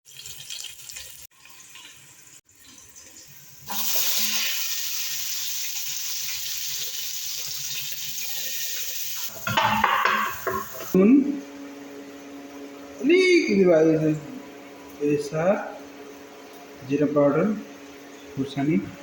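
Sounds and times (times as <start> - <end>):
water running from a tap into a sink: 0.0 - 11.0.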